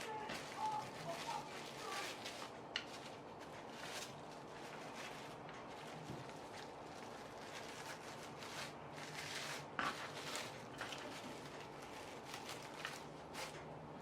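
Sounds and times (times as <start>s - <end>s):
plastic wrapper crinkling: 0.0s - 13.7s.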